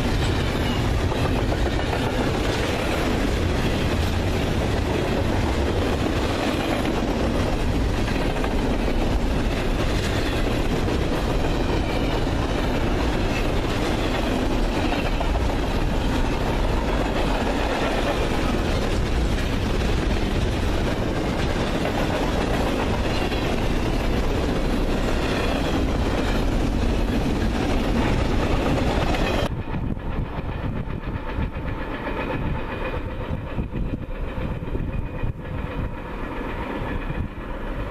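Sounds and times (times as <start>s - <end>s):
freight train rumbling past: 0.0s - 37.9s.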